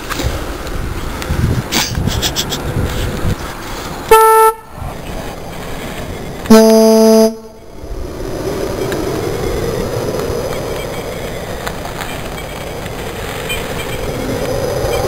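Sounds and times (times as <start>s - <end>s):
car horn honking: 4.1s - 4.7s, 6.5s - 7.6s.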